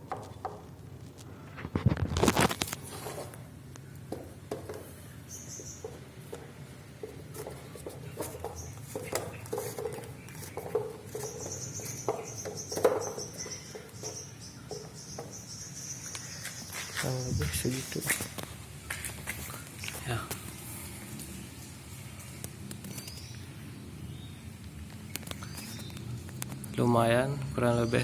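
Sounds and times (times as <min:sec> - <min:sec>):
scraping rustle: 0:01.2 - 0:03.5, 0:07.0 - 0:14.2.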